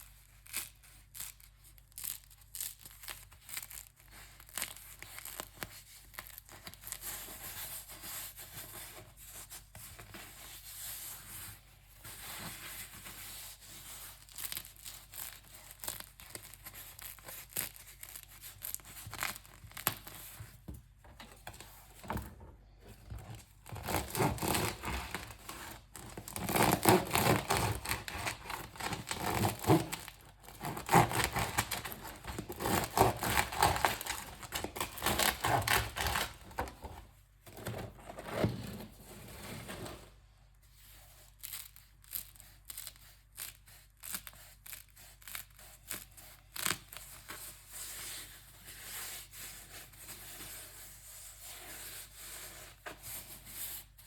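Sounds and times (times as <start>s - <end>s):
bread crust crackling: 23.4s - 36.7s.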